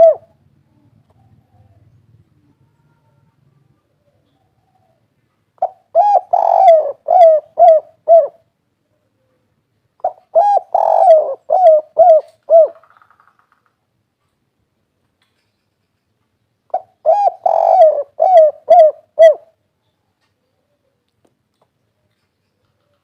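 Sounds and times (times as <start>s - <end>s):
dove cooing: 0.0s - 8.5s, 10.0s - 13.0s, 16.7s - 19.6s.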